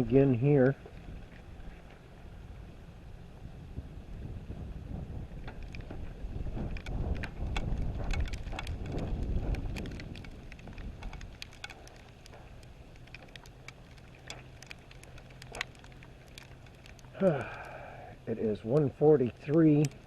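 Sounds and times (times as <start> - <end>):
wind buffeting microphone: 0.0 - 17.6
sleet ticking on hard surfaces: 5.4 - 20.0.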